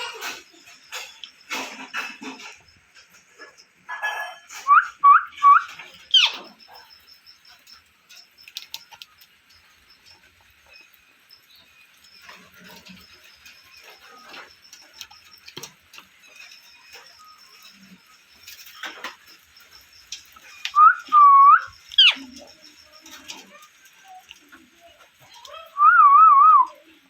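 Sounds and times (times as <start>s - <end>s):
parrot chatter and clicks: 0.0s - 27.0s
parrot chirps and squawks: 3.9s - 7.1s, 20.5s - 22.4s.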